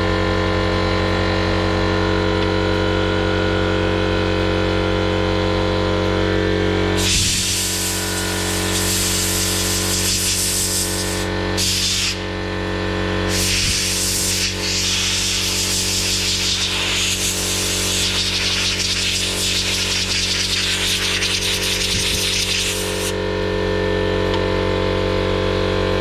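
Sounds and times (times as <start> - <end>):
pressurised gas jet hissing: 7.0 - 12.3, 13.3 - 23.2.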